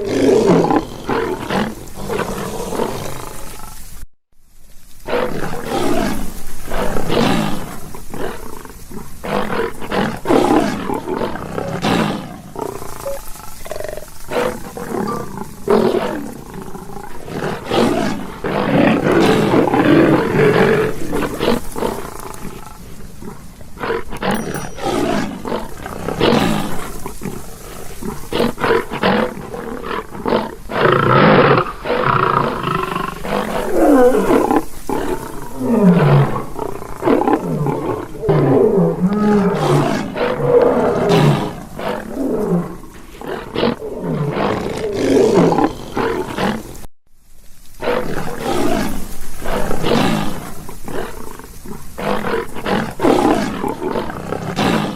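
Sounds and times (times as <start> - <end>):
lion roaring and grunting: 5.1 - 46.6.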